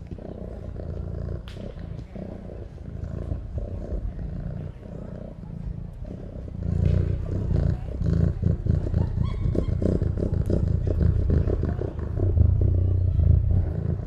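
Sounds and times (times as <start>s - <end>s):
deep animal growls and roars: 0.0s - 14.0s.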